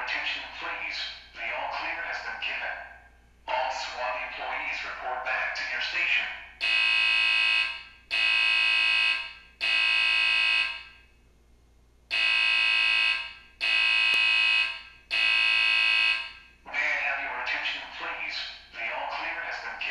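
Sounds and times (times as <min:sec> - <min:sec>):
fire alarm horn tone: 0:06.6 - 0:11.1, 0:12.1 - 0:16.5.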